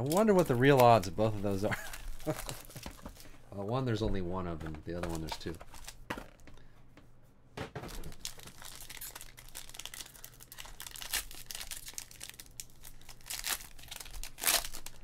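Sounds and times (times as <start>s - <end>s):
wrappers tearing and crinkling: 0.0s - 3.2s, 8.0s - 15.0s.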